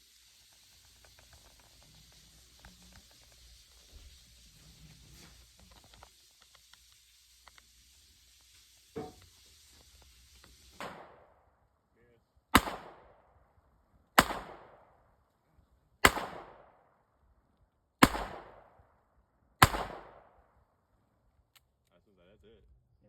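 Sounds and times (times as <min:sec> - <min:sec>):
revolver shots with echo: 0:12.6 - 0:13.1, 0:14.2 - 0:14.8, 0:16.0 - 0:16.6, 0:18.0 - 0:18.6, 0:19.6 - 0:20.2.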